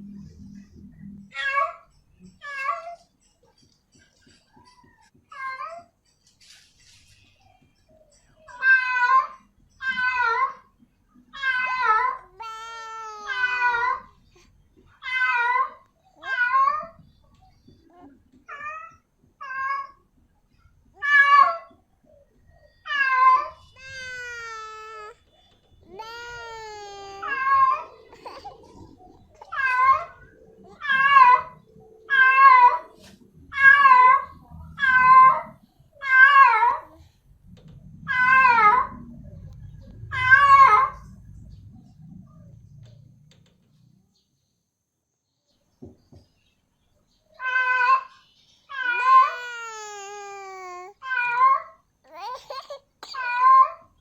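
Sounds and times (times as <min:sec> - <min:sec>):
cat meowing: 0:22.9 - 0:25.1, 0:30.7 - 0:32.9.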